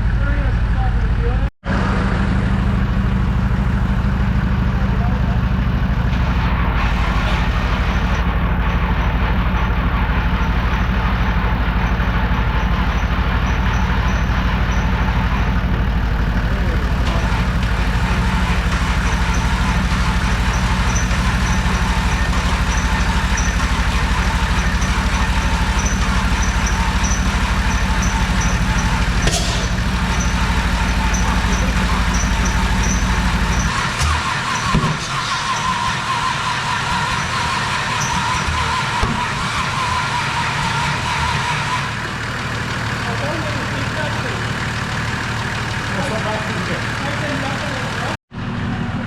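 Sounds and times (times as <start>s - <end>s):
vehicle engine idling: 0.0s - 49.0s
sharp knock: 29.2s - 29.9s.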